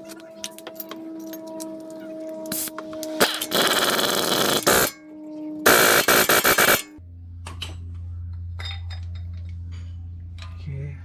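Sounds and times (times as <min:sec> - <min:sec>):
impact wrench hammering: 0:03.2 - 0:04.9, 0:05.7 - 0:06.9.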